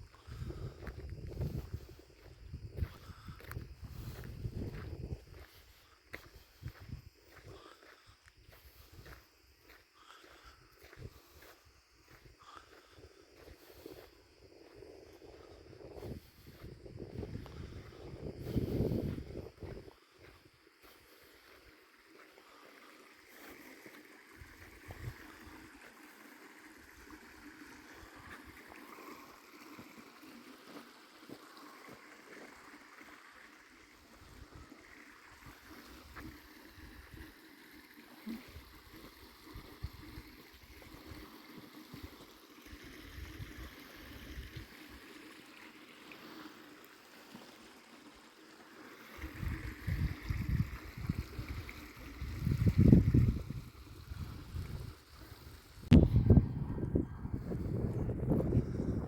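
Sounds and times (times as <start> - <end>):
wind buffeting microphone: 0.2 - 5.6, 15.0 - 20.0, 49.2 - 55.2, 55.8 - 59.0.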